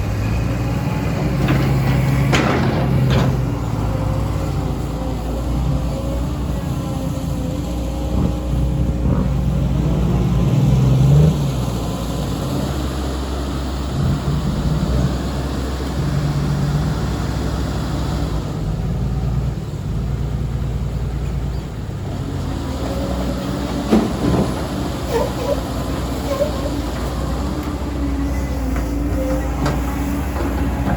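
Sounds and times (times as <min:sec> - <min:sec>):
excavator diesel engine working: 0:00.0 - 0:30.9
short metal clanks: 0:01.4 - 0:03.8.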